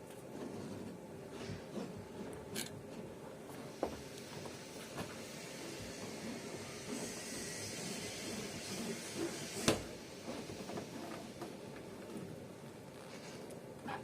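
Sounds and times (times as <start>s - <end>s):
rasping and scraping: 5.7s - 9.7s.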